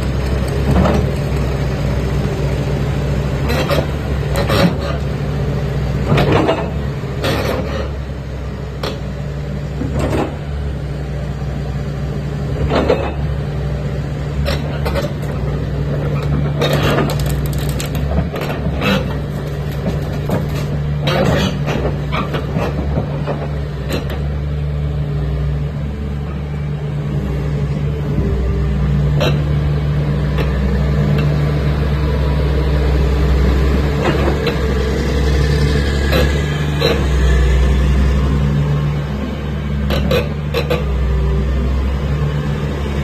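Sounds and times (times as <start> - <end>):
excavator diesel engine running: 0.0 - 43.0
machine clanks and knocks: 6.1 - 7.8, 9.8 - 10.5, 12.6 - 13.3, 14.5 - 24.3, 34.0 - 34.6.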